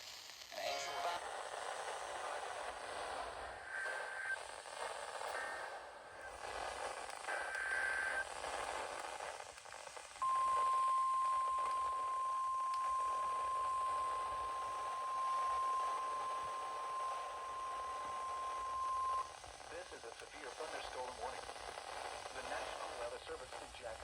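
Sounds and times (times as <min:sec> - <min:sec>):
buzzy digital data burst: 0:00.0 - 0:24.0
radio hiss: 0:00.0 - 0:24.0
steady high alarm tone: 0:10.2 - 0:19.3.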